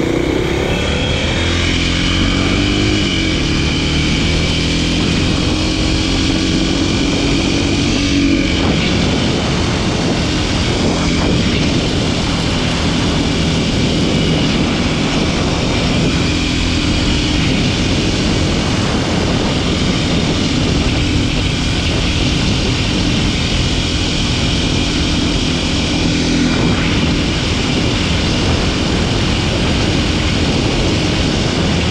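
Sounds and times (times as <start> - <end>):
wind rushing: 0.0 - 3.2
motorcycle engine cruising: 0.0 - 31.9.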